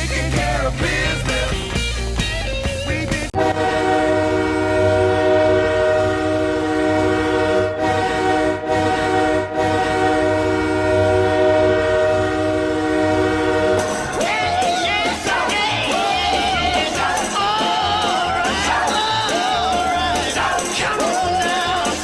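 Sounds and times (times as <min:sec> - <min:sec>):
goal song music: 0:00.0 - 0:22.0
multi-tone goal horn: 0:03.4 - 0:15.3.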